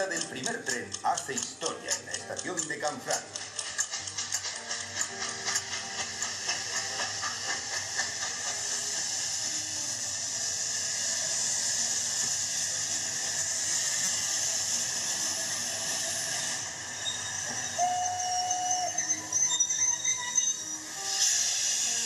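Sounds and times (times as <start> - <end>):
steam hissing: 0.0 - 22.0
train whistle: 14.4 - 22.0.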